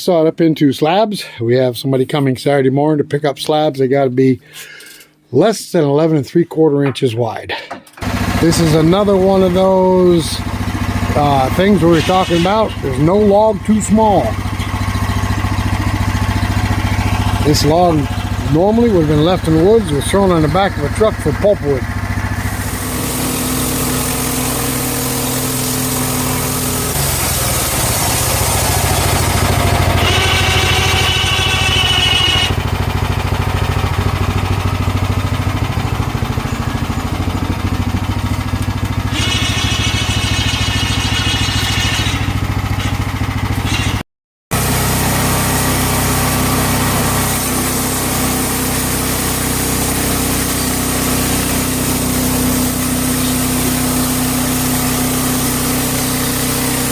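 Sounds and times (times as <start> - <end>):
band saw cutting log: 8.0 - 56.9
gas engine running: 8.0 - 56.9
high whine: 8.4 - 33.0, 33.9 - 42.8.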